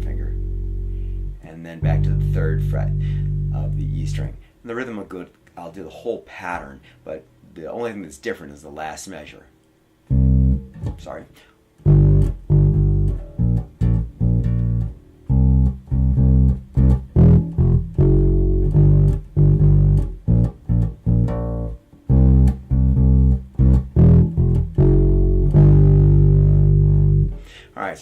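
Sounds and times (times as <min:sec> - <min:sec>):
bass guitar playing: 0:00.0 - 0:04.5, 0:10.1 - 0:11.2, 0:11.8 - 0:27.6.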